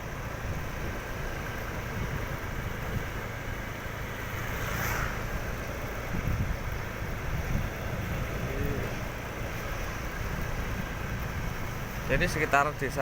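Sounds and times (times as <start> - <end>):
low outdoor rumble: 0.0 - 13.0
brief hiss: 4.5 - 5.3.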